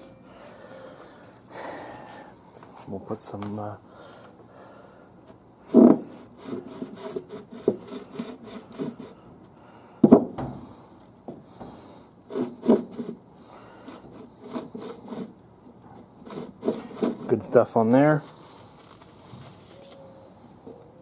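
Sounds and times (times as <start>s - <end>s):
tools knocking on workbench: 10.0s - 10.6s.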